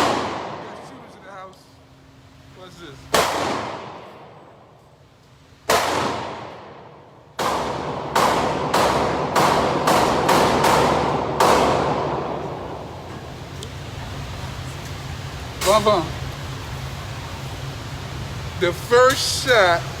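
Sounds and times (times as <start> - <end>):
gunshots with ringing echo: 0.0 - 1.1, 3.1 - 4.7, 5.7 - 13.0.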